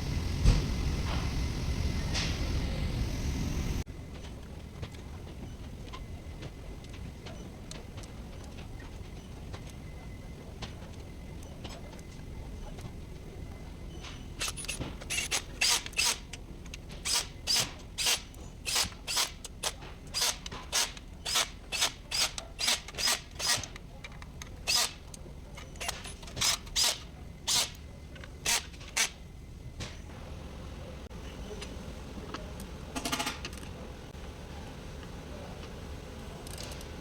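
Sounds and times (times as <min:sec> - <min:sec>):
ratchet wrench clicking: 0:36.4 - 0:36.8.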